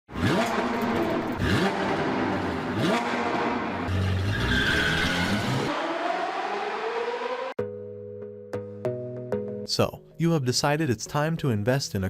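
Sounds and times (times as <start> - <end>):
car engine revving: 0.1 - 7.6.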